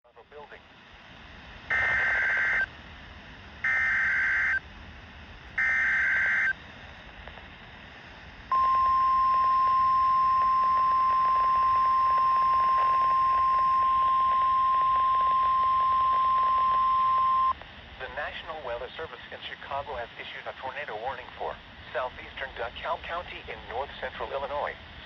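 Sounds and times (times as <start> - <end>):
steady alarm tone: 1.7 - 2.7, 3.6 - 4.6, 5.6 - 6.6, 8.5 - 17.5
warbling data tones: 1.7 - 2.7, 5.6 - 6.6, 8.5 - 17.5.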